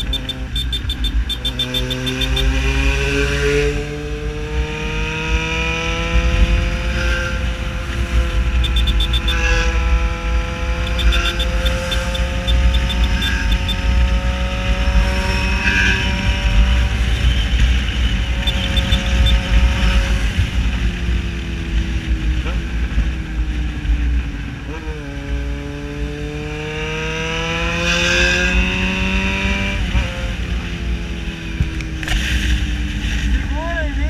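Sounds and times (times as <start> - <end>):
motorcycle engine running loud: 0.0 - 34.0.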